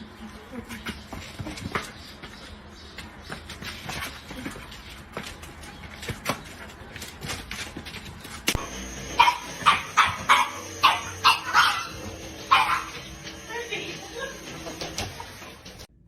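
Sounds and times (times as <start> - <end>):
dog barking: 9.1 - 13.2.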